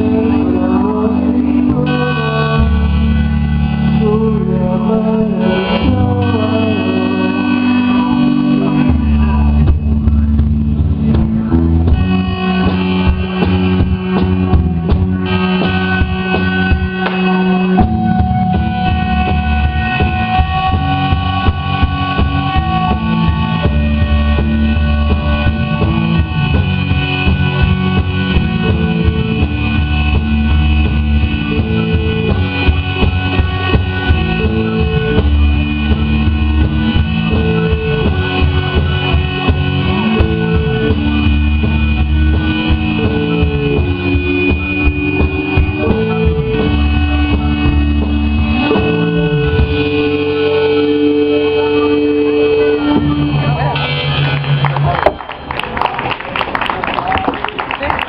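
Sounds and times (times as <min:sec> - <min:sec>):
bass line: 0:00.0 - 0:58.0
instrumental rock band playing: 0:00.0 - 0:58.0
steady drumming: 0:05.0 - 0:58.0.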